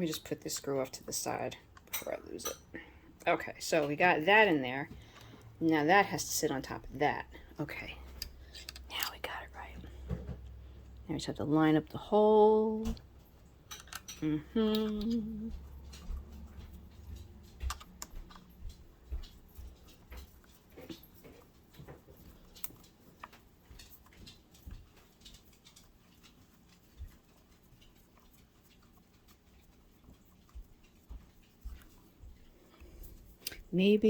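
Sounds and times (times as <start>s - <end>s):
screw and tools tapping metal: 13.7s - 14.2s.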